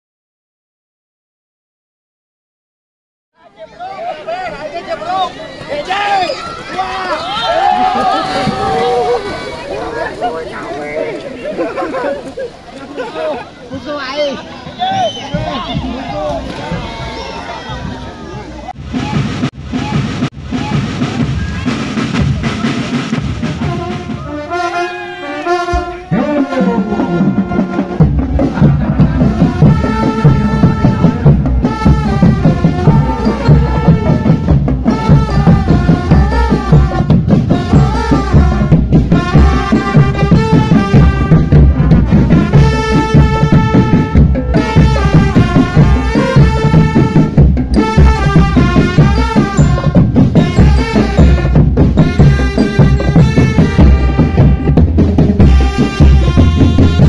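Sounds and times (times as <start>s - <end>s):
marching drum band playing: 7.0s - 9.5s, 13.8s - 18.0s, 18.7s - 57.0s.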